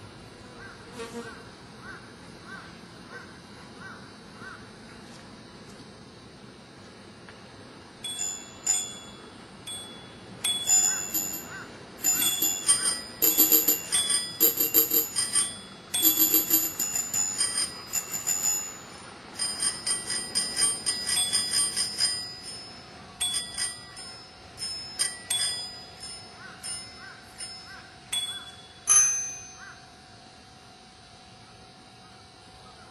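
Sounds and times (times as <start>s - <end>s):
small bells ringing music: 8.0s - 30.0s.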